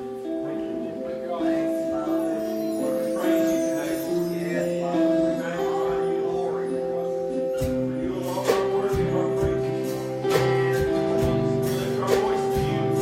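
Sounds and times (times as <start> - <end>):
guitar chords: 0.0 - 13.0
people singing: 7.5 - 13.0
steady drum beat: 7.6 - 13.0.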